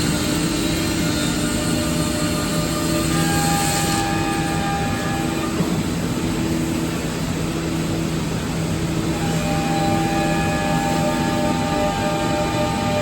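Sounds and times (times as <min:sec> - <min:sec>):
high machine whine: 0:00.0 - 0:13.0
router machine hum: 0:08.9 - 0:13.0.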